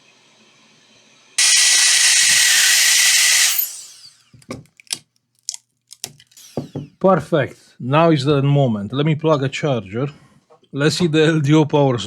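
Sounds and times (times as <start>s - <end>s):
electric blower motor whirring: 1.4s - 4.2s, 6.2s - 6.9s
sharp clicks and knocks: 4.4s - 6.9s.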